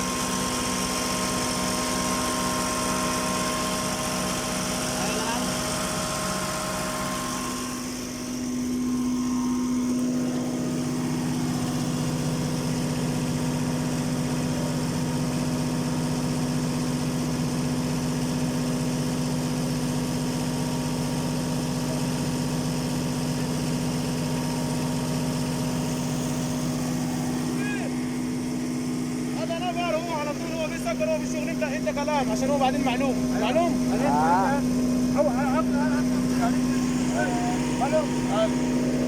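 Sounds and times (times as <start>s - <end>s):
diesel generator engine running: 0.0s - 39.0s.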